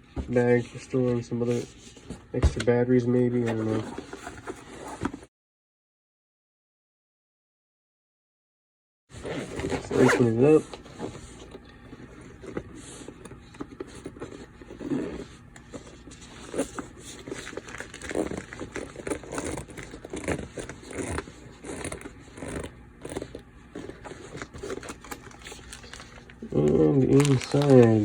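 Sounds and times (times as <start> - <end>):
case scraping and rustling: 0.2 - 5.3, 9.1 - 26.4
zipper pulled: 9.1 - 25.9.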